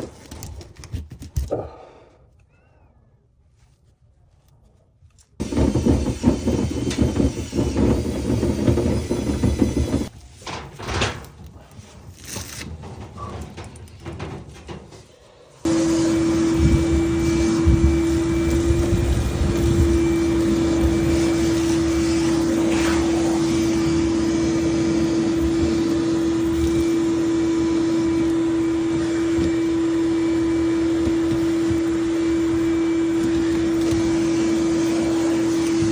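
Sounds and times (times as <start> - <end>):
low bumps and knocks: 5.4 - 10.1
vacuum motor whining: 5.4 - 10.1, 15.5 - 35.9.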